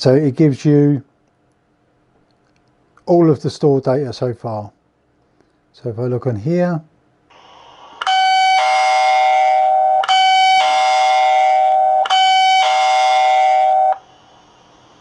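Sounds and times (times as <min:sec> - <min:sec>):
electronic doorbell chime: 0:08.1 - 0:14.0.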